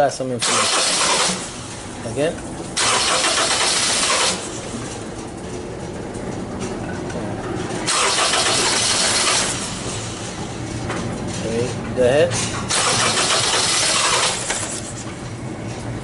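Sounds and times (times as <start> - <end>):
quiet engine running: 0.2 - 16.0
engine starter cranking: 0.4 - 1.8, 2.8 - 4.7, 7.9 - 10.2, 12.7 - 15.0.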